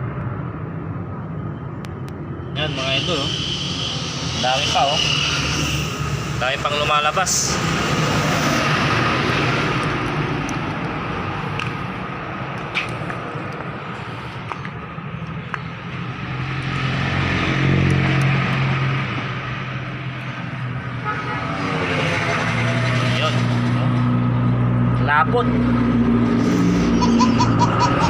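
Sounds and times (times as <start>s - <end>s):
air and water hissing: 2.6s - 8.8s.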